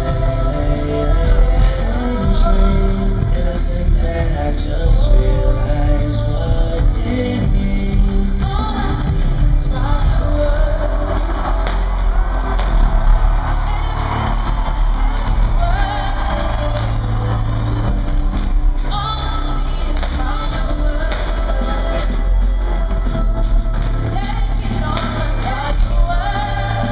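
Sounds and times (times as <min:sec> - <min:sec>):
deep bass notes: 0:00.0 - 0:26.9
crowd shouting: 0:10.5 - 0:23.2.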